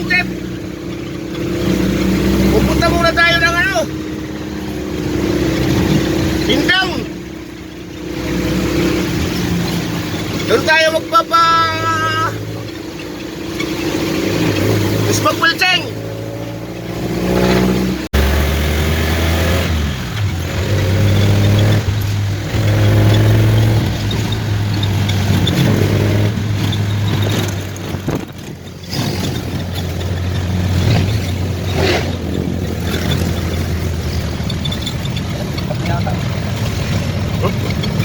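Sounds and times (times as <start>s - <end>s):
vehicle engine running: 0.0s - 38.0s
wind and road noise: 0.0s - 38.0s.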